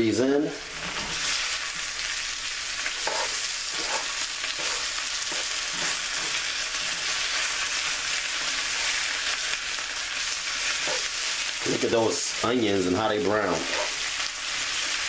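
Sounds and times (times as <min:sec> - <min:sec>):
potatoes sizzling in oil: 0:00.0 - 0:15.0
utensil scraping pan: 0:02.9 - 0:07.2, 0:10.8 - 0:12.4, 0:13.5 - 0:14.1.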